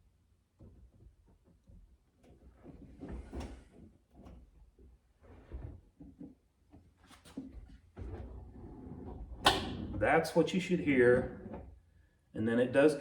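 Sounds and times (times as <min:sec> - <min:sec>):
drawer sliding on rollers: 0:08.0 - 0:10.2, 0:11.1 - 0:11.8.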